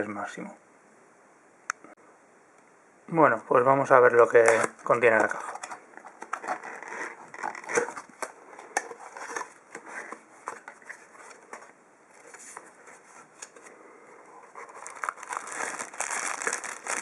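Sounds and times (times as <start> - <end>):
cardboard packaging rustling: 4.2 - 17.0.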